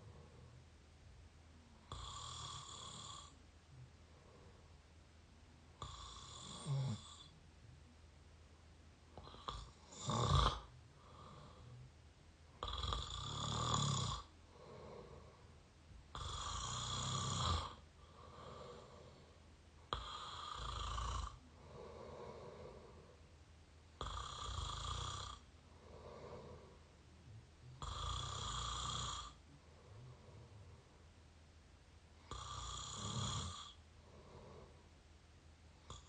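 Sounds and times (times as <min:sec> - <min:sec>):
quiet breaths: 0:00.0 - 0:36.0
person snoring: 0:01.8 - 0:03.4, 0:05.8 - 0:07.3, 0:09.2 - 0:11.9, 0:12.6 - 0:15.5, 0:16.1 - 0:23.2, 0:24.0 - 0:26.8, 0:27.7 - 0:30.9, 0:32.2 - 0:34.8.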